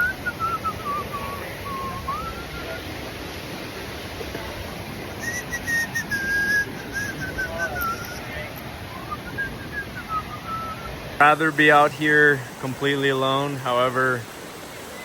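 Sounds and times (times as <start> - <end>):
person whistling a slow tune: 0.0 - 2.8, 5.2 - 8.3, 8.9 - 10.9
rush of falling water: 0.0 - 15.0.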